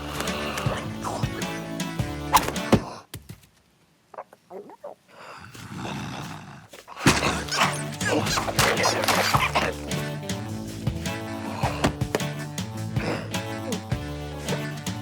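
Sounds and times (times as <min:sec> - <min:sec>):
lively background music: 0:00.0 - 0:02.8, 0:07.2 - 0:15.0
sliding cartoon sounds: 0:04.2 - 0:10.6.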